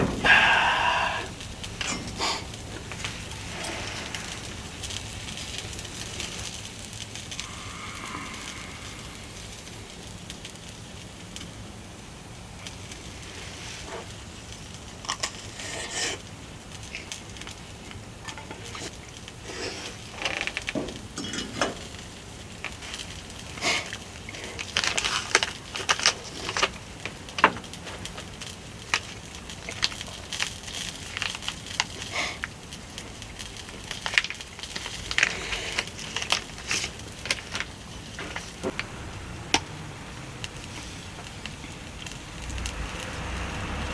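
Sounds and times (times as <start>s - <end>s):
low hiss: 0.0s - 11.8s, 38.1s - 43.9s
wood fire crackling and popping: 0.0s - 43.9s.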